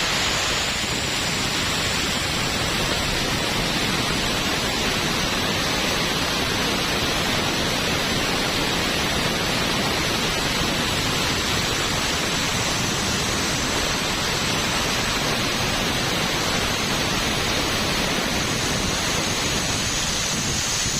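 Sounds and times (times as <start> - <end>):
compressed air hissing: 0.0 - 5.2, 11.1 - 20.9.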